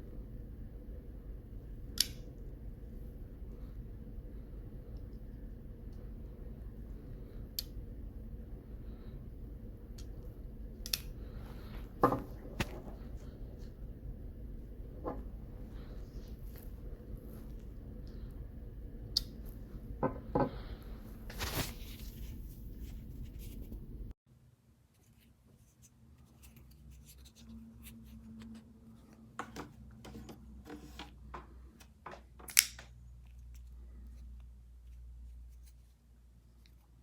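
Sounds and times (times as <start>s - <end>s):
folding knife clicks: 10.8s - 11.1s, 32.5s - 32.8s.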